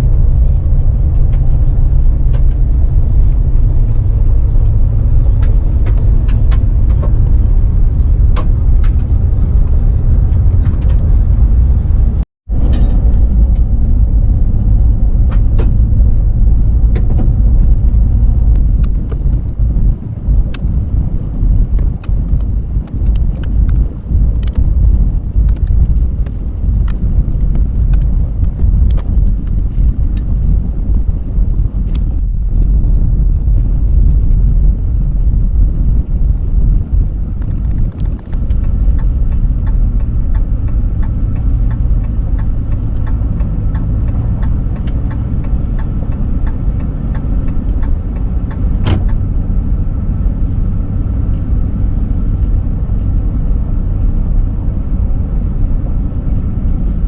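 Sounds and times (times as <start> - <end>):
vehicle engine and road rumble: 0.0 - 57.0
light regular ticking: 16.8 - 49.2.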